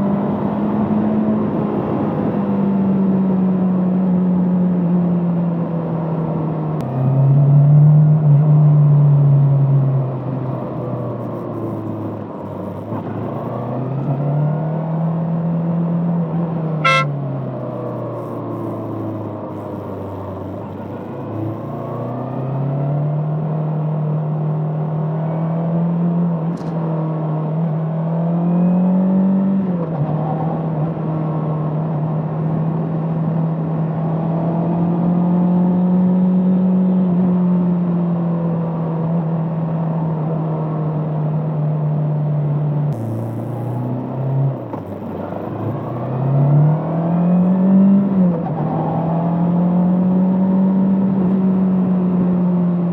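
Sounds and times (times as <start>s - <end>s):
motorcycle engine: 16.7s - 22.5s, 42.9s - 46.4s.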